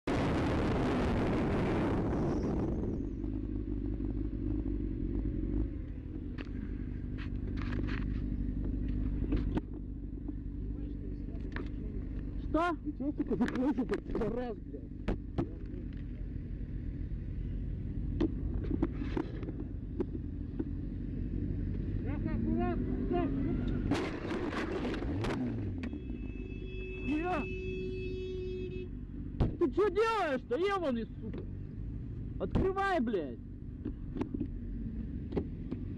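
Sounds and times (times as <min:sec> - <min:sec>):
wind and road rush: 0:00.0 - 0:35.9
motorcycle engine running: 0:02.6 - 0:26.2.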